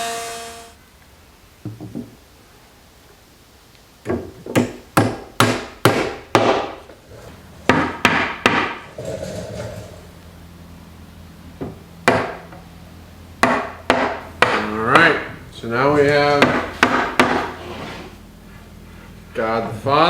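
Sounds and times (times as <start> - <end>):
hammer striking wood: 4.1 - 6.8, 7.7 - 8.8, 11.6 - 12.5, 13.4 - 15.3, 16.4 - 17.6.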